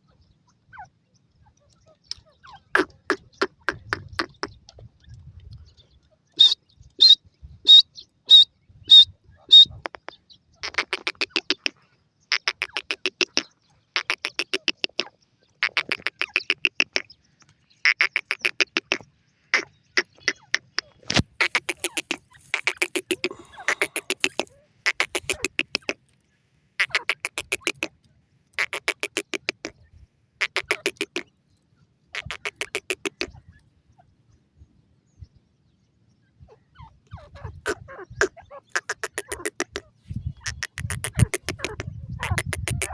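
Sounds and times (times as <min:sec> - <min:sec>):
francolin calling: 0:00.1 - 0:17.2, 0:17.8 - 0:26.0.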